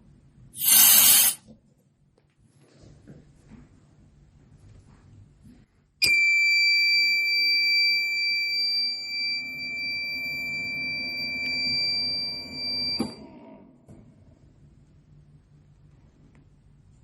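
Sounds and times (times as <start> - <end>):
high-pitched alarm buzzer tone: 0.6 - 1.4, 6.1 - 13.2.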